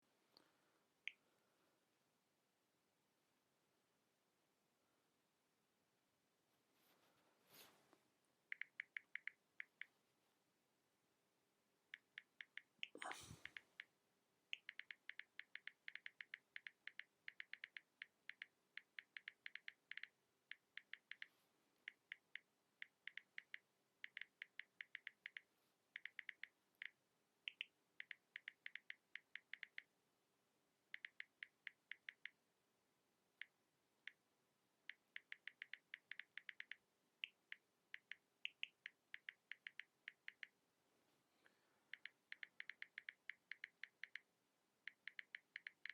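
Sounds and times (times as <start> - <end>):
phone keyboard typing clicks: 14.5 - 21.3, 21.9 - 29.9, 34.8 - 40.6, 41.9 - 45.9.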